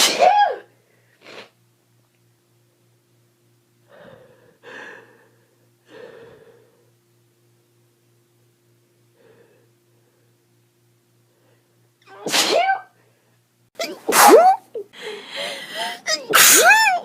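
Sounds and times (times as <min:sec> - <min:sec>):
person sneezing: 0:00.0 - 0:01.6, 0:12.1 - 0:12.9, 0:13.8 - 0:14.8, 0:15.8 - 0:17.0
soft gasping breaths: 0:03.9 - 0:07.0, 0:15.0 - 0:16.1.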